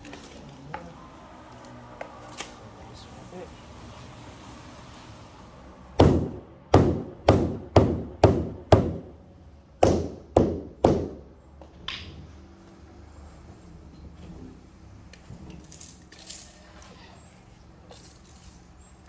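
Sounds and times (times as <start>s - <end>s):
hammer blows: 6.0s - 9.2s.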